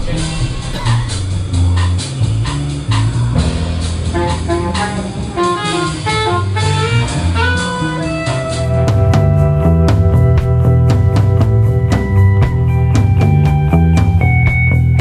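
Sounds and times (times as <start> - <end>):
jazz instrumental music: 0.0 - 15.0.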